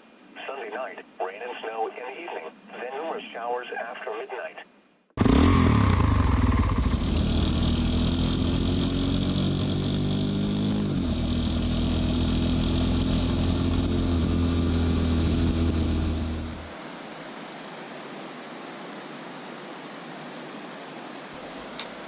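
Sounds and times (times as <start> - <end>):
motorbike engine accelerating: 5.2 - 16.7.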